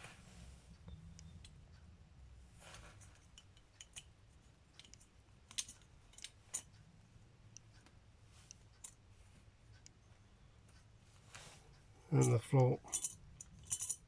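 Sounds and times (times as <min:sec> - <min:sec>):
small metal parts clicking: 0:02.8 - 0:04.1, 0:04.7 - 0:06.8, 0:12.1 - 0:14.0.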